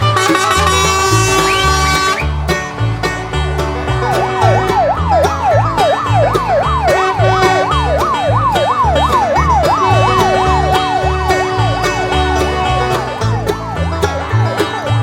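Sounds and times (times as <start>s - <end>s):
upbeat backing track: 0.0s - 15.0s
fast yelping siren: 4.2s - 12.2s.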